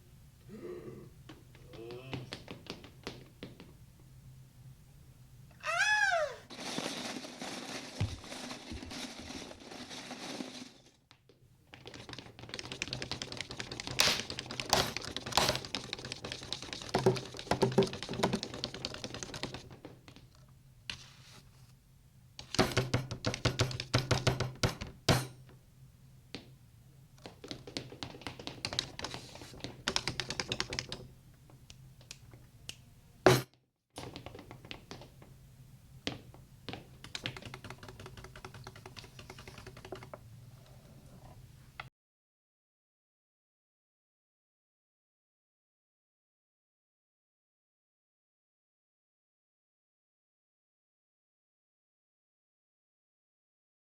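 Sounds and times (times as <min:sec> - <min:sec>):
rapid clicking and clattering taps: 0:01.8 - 0:03.8, 0:11.7 - 0:20.3, 0:22.4 - 0:25.3, 0:27.2 - 0:32.2, 0:36.0 - 0:40.3.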